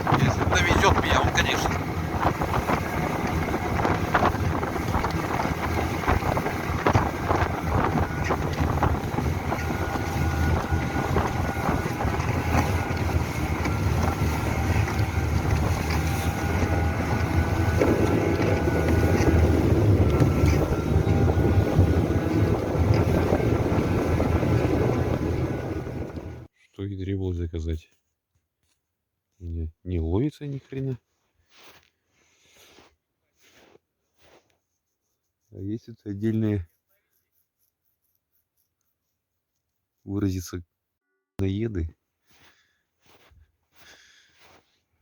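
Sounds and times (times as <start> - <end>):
outboard motor running: 0.0 - 26.5
wind buffeting microphone: 0.0 - 26.5.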